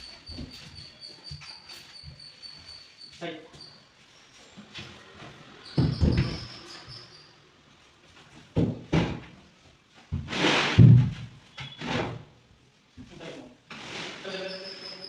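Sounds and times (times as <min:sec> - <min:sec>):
brief high squeak: 0:05.6 - 0:07.4, 0:14.2 - 0:15.0.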